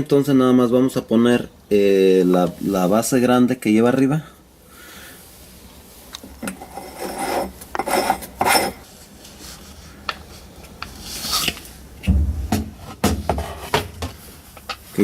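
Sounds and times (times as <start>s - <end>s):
scraping and rubbing: 6.4s - 11.7s
dull thump: 12.0s - 14.2s.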